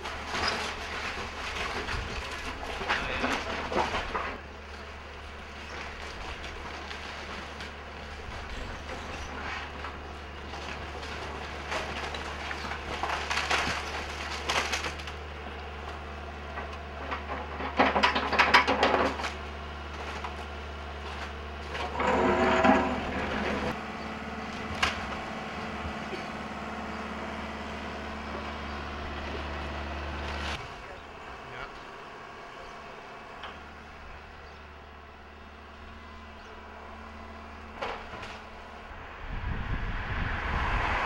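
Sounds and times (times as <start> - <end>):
wood splintering and crunching: 0.0 - 33.9, 35.5 - 38.8
heavy machinery drone: 0.0 - 41.0
sharp wood crack: 11.7 - 15.2.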